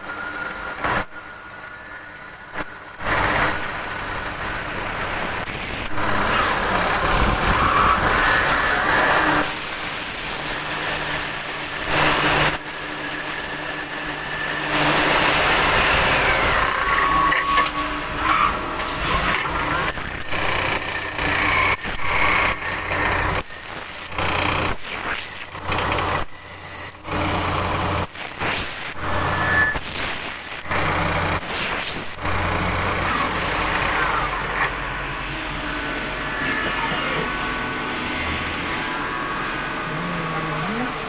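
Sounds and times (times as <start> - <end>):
lathe machining noise: 0.0 - 41.0
high-pitched whines: 28.2 - 41.0.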